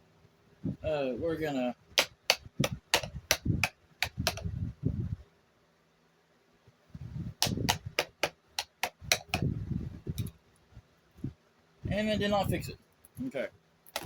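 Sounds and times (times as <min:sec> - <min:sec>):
dull handling knocks: 0:02.0 - 0:04.5, 0:07.4 - 0:09.6
fan motor sharp clicks: 0:02.0 - 0:04.5, 0:07.4 - 0:09.5.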